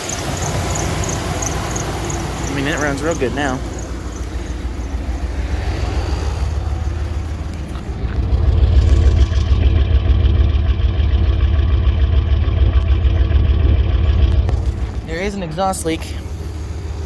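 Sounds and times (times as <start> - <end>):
van engine running: 0.0 - 17.0.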